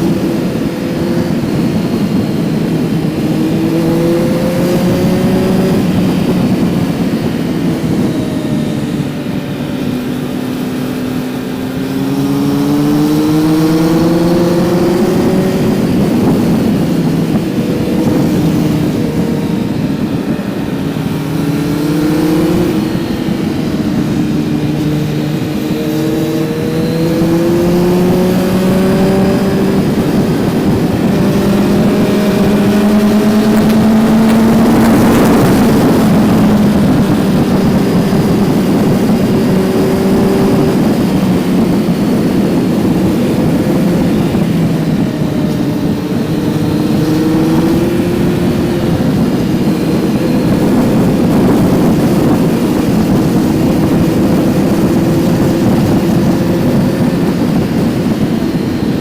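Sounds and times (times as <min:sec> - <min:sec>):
motorcycle engine accelerating: 0:00.0 - 0:59.0.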